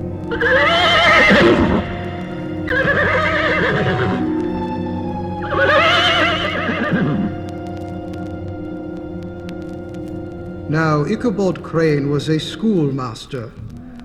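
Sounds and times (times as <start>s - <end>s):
eerie background music: 0.0s - 14.0s
horse whinnying: 0.3s - 4.4s, 5.4s - 7.4s.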